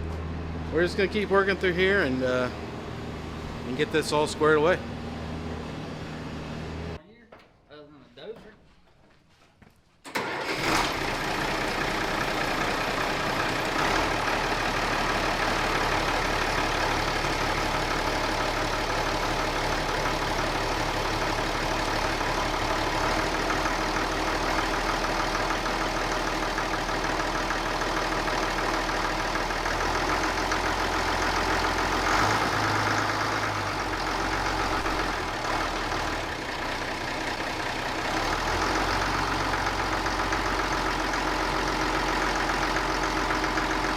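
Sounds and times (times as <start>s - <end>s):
diesel engine running: 0.0s - 7.0s, 10.1s - 43.9s.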